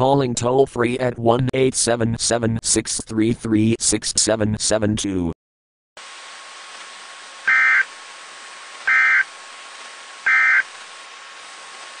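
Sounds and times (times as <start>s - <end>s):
steady hiss: 6.0s - 12.0s
shrill two-tone digital data bursts: 7.5s - 7.9s, 8.9s - 9.3s, 10.3s - 10.7s.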